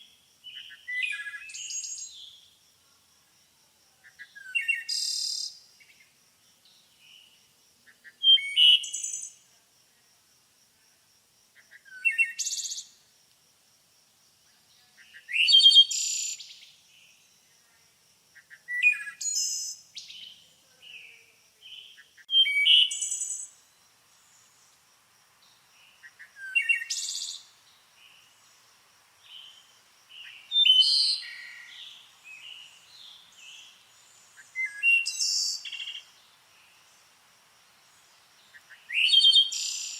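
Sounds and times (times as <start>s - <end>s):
songbird singing high rapid phrases: 0.4s - 2.4s, 4.2s - 6.0s, 8.0s - 9.4s, 15.0s - 17.2s, 18.4s - 23.6s, 25.9s - 28.3s, 29.2s - 36.4s, 38.5s - 39.9s.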